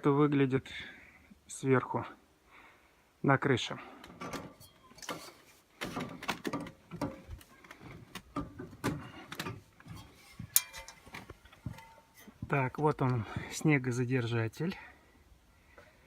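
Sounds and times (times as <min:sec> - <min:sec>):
knocks and clanks on ladder: 0:05.8 - 0:07.4, 0:08.3 - 0:12.5.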